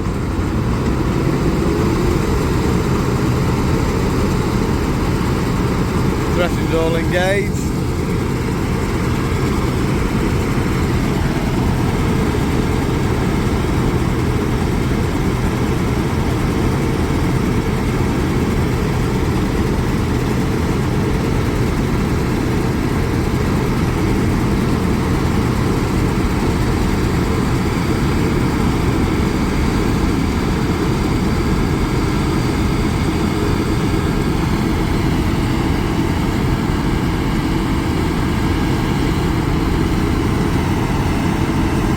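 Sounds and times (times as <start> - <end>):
combine harvester running: 0.0 - 41.9.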